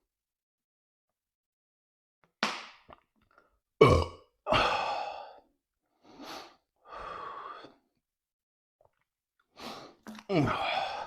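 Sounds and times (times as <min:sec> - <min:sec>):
man burping: 0:03.8 - 0:04.8, 0:10.1 - 0:11.0
man breathing heavily: 0:04.5 - 0:07.8.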